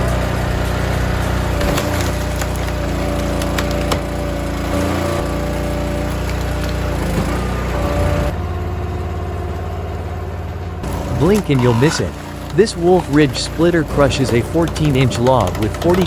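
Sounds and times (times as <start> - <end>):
machine engine running: 0.0 - 16.0
wood cracking: 1.5 - 8.3, 10.8 - 16.0.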